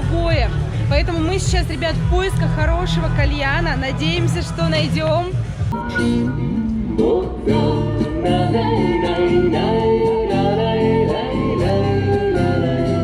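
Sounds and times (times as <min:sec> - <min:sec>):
instrumental backing with bass: 0:00.0 - 0:13.0.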